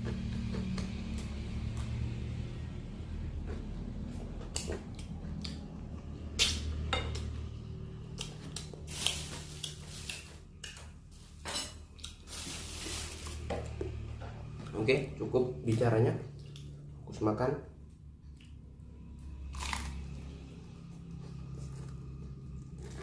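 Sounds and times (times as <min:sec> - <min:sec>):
close-miked chewing: 0:03.2 - 0:06.1
dishes and cutlery clatter: 0:11.4 - 0:11.8.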